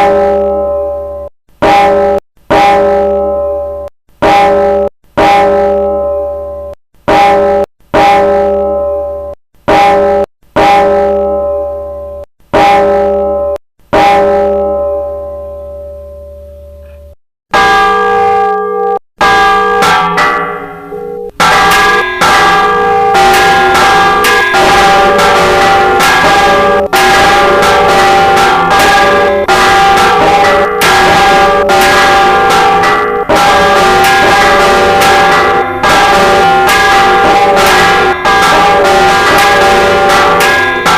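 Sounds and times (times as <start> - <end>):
church bells ringing: 0.0 - 40.9.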